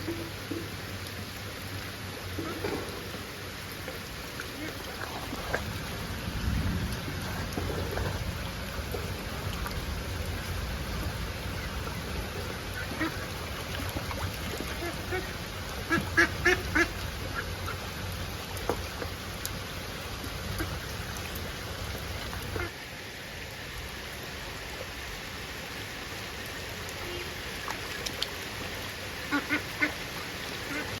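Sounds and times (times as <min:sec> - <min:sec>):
outdoor background rumble: 0:00.0 - 0:22.8.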